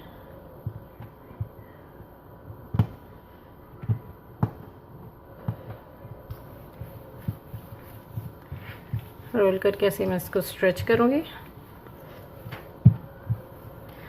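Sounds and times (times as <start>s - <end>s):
hands rolling dough: 5.4s - 14.0s.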